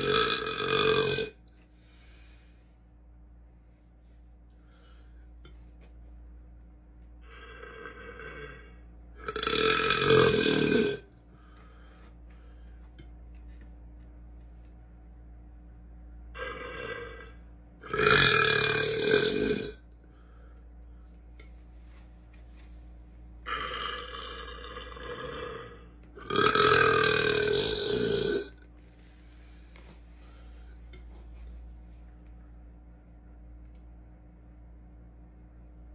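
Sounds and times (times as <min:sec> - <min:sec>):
man burping: 0:00.0 - 0:01.4, 0:07.2 - 0:11.1, 0:16.4 - 0:19.8, 0:23.5 - 0:28.6.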